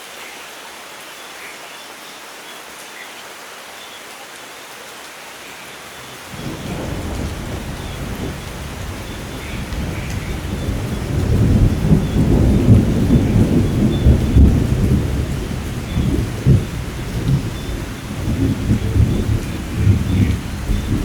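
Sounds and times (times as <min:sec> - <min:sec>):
steady rain: 0:00.0 - 0:21.0
thunder rolling: 0:06.3 - 0:21.0.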